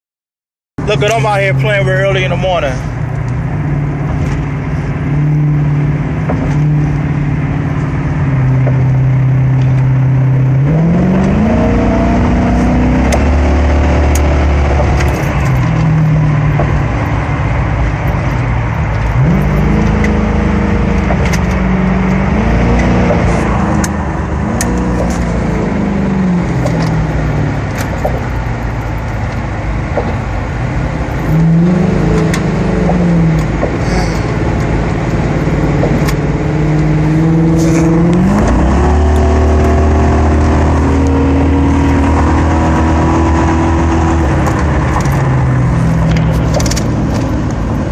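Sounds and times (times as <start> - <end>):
engines revving: 0.8 - 47.9.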